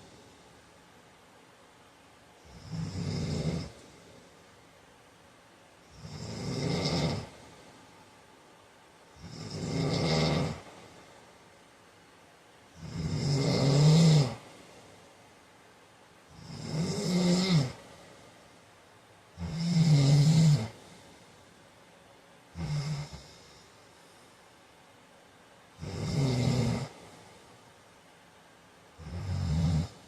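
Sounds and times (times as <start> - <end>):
man snoring: 2.4 - 3.8, 5.9 - 7.6, 9.2 - 11.0, 12.8 - 14.5, 16.3 - 17.9, 19.4 - 20.9, 22.5 - 23.7, 25.8 - 27.3, 29.0 - 30.0.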